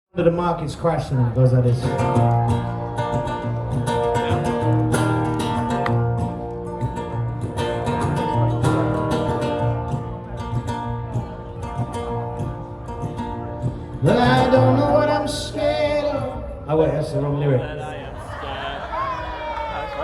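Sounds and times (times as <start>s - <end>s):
acoustic guitar picking and strumming: 1.7s - 16.4s.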